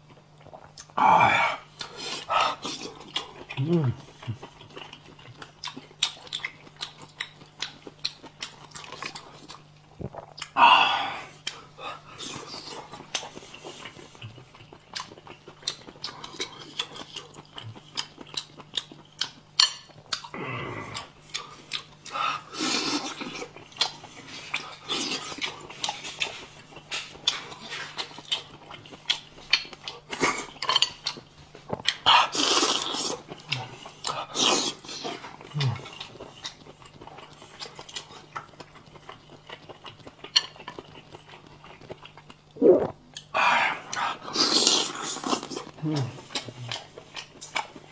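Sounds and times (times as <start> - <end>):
sucking slurps: 42.6 - 43.0.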